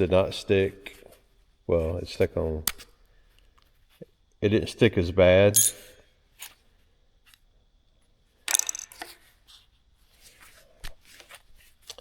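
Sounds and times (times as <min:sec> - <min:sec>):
small metal pieces clinking: 0:08.5 - 0:09.2.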